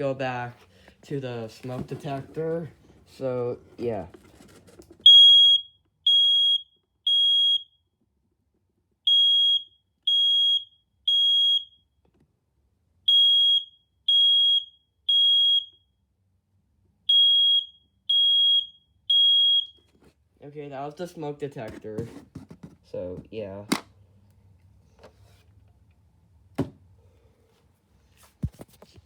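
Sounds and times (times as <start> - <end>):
smoke detector beeping: 5.1 - 7.8, 9.1 - 11.8, 13.1 - 15.8, 17.1 - 19.8.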